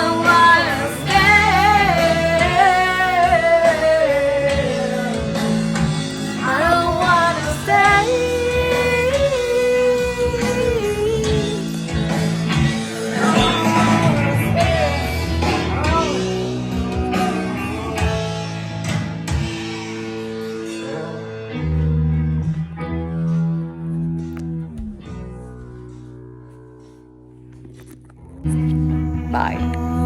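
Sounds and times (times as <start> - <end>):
song with singing over guitar: 0.0 - 25.1.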